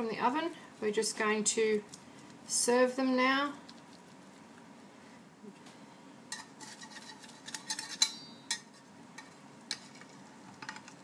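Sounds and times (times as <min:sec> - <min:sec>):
metal utensil scraping baking dish: 0:06.3 - 0:08.8.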